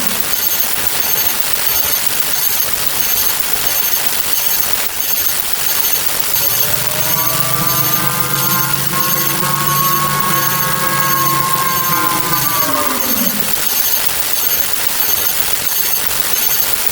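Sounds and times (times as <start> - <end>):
mechanical sound winding down: 6.3 - 13.8.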